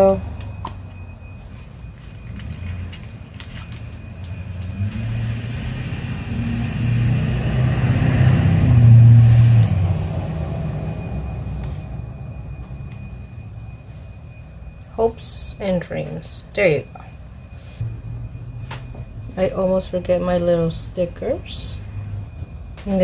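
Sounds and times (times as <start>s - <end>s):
passing vehicle engine rumble: 0.0s - 14.4s.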